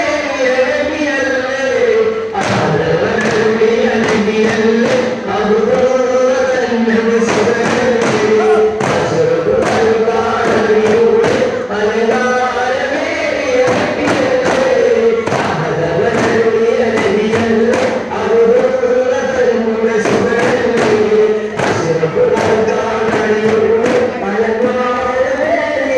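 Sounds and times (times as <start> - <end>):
men chanting in unison: 0.0 - 25.9
frame drums: 2.4 - 5.9, 7.0 - 12.3, 13.6 - 18.9, 19.9 - 25.0.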